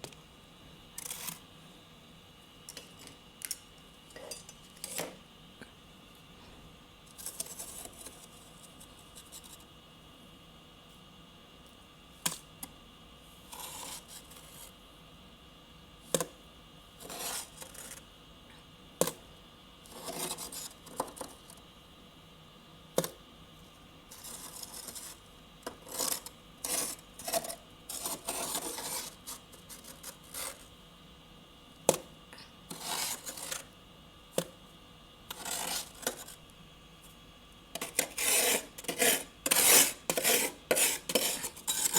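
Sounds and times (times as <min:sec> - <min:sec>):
frost being scraped and crunched: 0:13.4 - 0:14.8, 0:17.0 - 0:18.0, 0:19.9 - 0:20.8, 0:24.1 - 0:30.7, 0:32.7 - 0:33.7, 0:35.3 - 0:36.4, 0:37.8 - 0:41.9.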